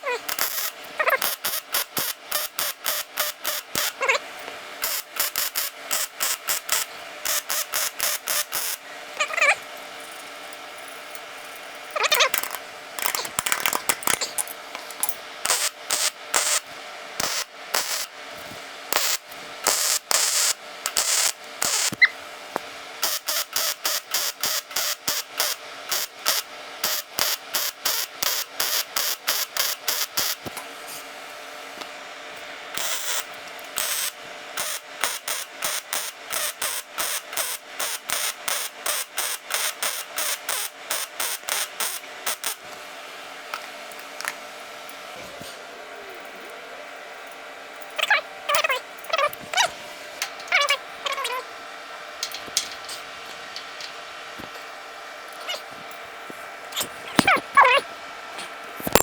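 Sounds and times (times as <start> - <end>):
faint squeaks: 50.4 - 51.4.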